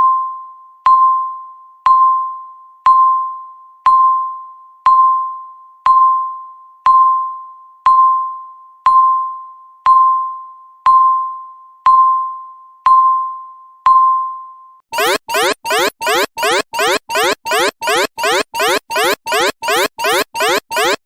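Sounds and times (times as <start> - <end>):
countdown timer beeps: 15.0 - 21.0.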